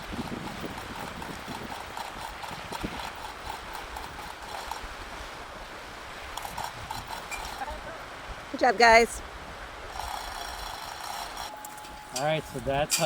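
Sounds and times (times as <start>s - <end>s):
chain hoist clicking: 0.8s - 4.8s, 6.4s - 7.6s, 9.9s - 13.0s.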